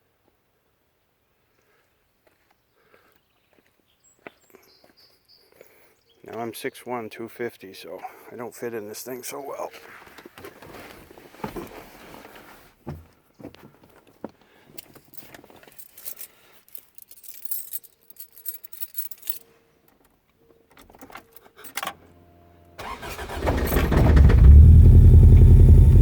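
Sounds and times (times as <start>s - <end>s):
car engine starting and running: 22.1s - 26.0s.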